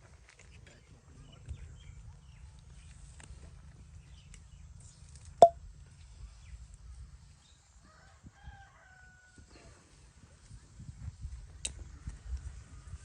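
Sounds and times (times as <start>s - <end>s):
rooster crowing faintly: 7.8s - 9.7s.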